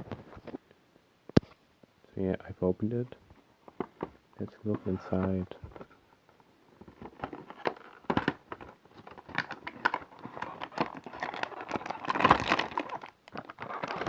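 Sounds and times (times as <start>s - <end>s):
packaging crinkling and rustling: 6.8s - 14.0s.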